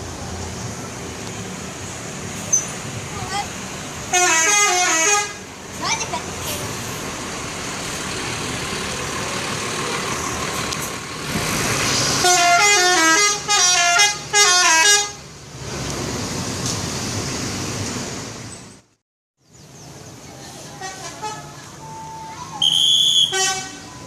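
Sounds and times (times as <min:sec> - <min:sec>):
traffic noise: 0:00.0 - 0:24.0
multi-tone musical bus horn: 0:04.1 - 0:05.4, 0:12.2 - 0:15.2, 0:20.8 - 0:21.6, 0:22.6 - 0:24.0.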